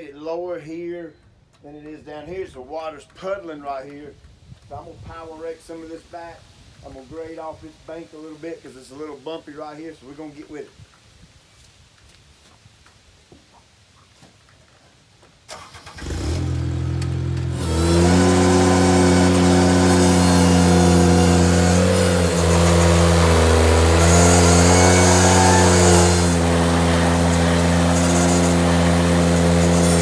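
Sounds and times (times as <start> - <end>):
tractor engine starting and revving: 15.5 - 30.0.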